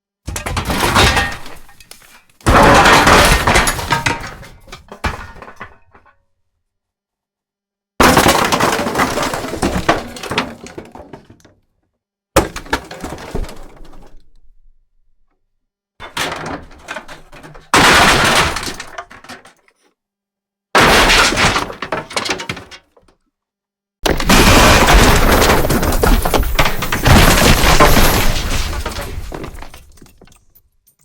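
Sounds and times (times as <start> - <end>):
ceiling debris crashing: 0.3 - 5.7, 16.2 - 19.2, 20.8 - 22.7, 24.0 - 30.4.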